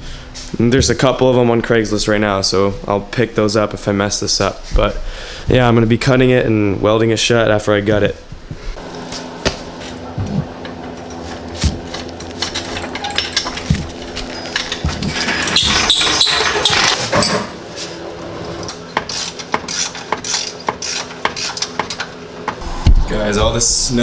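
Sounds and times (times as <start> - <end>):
steady low hum: 0.0 - 15.9, 17.4 - 24.0
metal hand tools clinking: 11.0 - 17.4.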